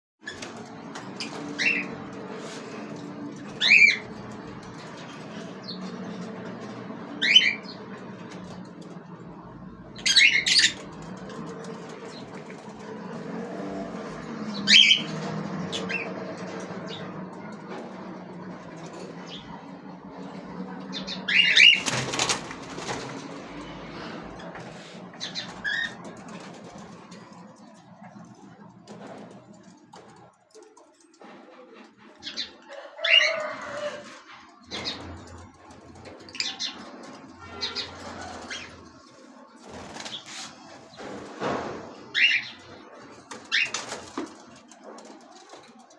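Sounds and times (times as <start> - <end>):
pet birds squawking: 0.3 - 8.6, 9.8 - 16.2, 18.7 - 27.7, 32.2 - 34.1, 34.7 - 40.9, 42.0 - 44.3.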